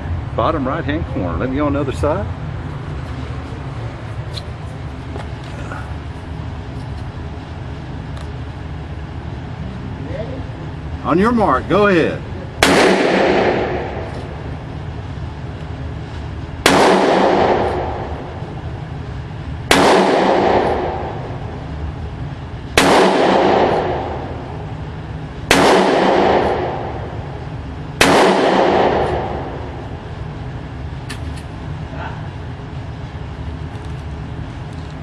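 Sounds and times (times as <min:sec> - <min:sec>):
low rumble: 0:00.0 - 0:35.0
revolver gunshots with echo: 0:12.6 - 0:14.5, 0:16.6 - 0:18.4, 0:19.7 - 0:21.5, 0:22.7 - 0:24.6, 0:25.4 - 0:27.3, 0:28.0 - 0:30.0.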